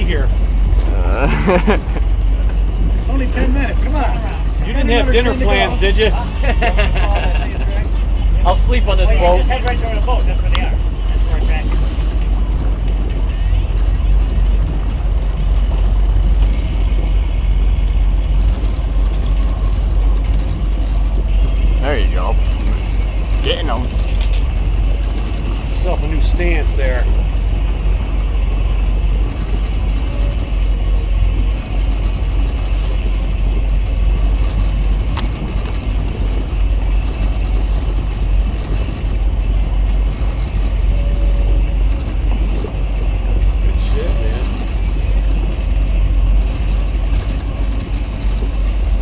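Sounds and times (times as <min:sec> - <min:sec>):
boat engine rumbling: 0:00.0 - 0:49.0
fishing reel clicking: 0:09.6 - 0:21.4, 0:22.4 - 0:49.0.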